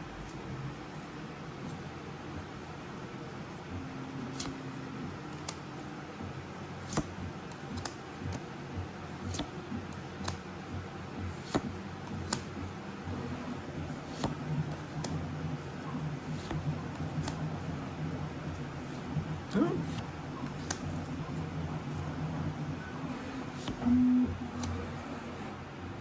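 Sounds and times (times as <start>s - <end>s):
low room hum: 0.0s - 26.0s
trading cards clicking and snapping: 4.3s - 4.6s, 5.3s - 5.7s, 6.8s - 8.4s, 9.2s - 10.5s, 11.4s - 12.6s, 16.3s - 17.4s, 19.4s - 21.0s, 23.5s - 23.8s, 24.6s - 24.8s.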